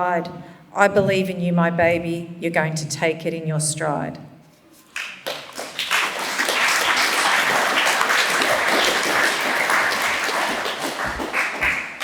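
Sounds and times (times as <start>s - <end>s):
audience clapping: 4.9s - 12.0s.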